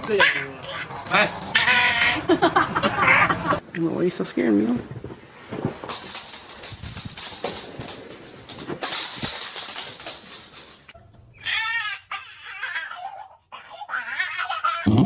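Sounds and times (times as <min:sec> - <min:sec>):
dog crying: 0:00.1 - 0:03.6, 0:11.4 - 0:14.9
clicking and rustling handling: 0:04.9 - 0:11.0.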